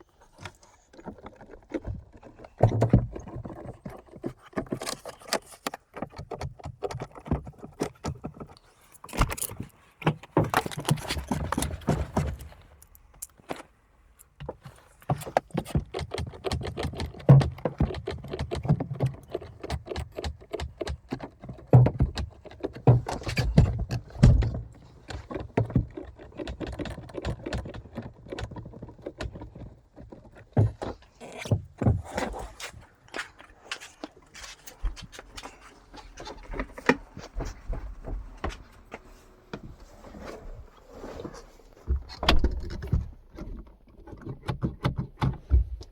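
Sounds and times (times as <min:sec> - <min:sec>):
car metallic rattling and clicking: 0:04.6 - 0:30.3.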